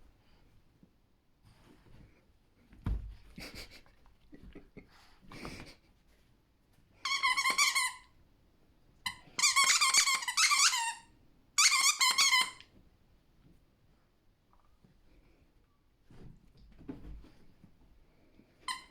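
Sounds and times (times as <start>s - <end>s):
squeaky toy squeaking: 7.0s - 8.1s, 9.1s - 12.6s.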